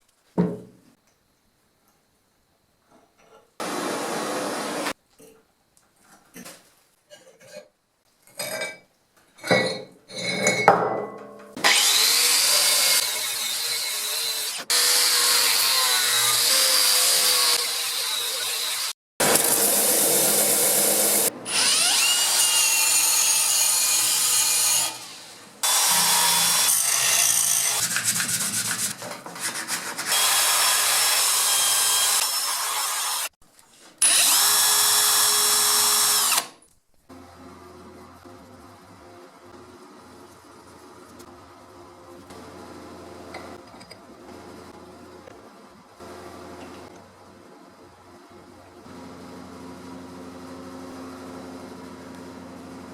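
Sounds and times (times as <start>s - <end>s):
tool spinning up whine: 11.6s - 23.2s
power tool scraping rust: 11.6s - 33.4s.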